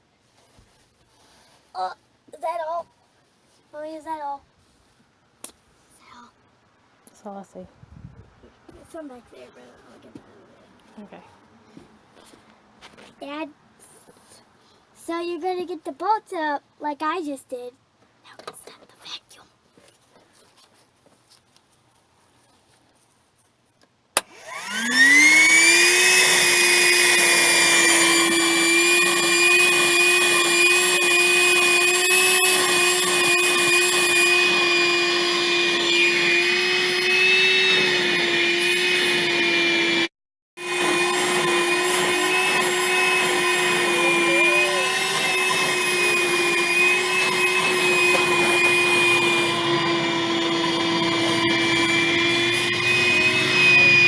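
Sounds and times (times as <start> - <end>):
vacuum cleaner motor whine: 24.2 - 54.0.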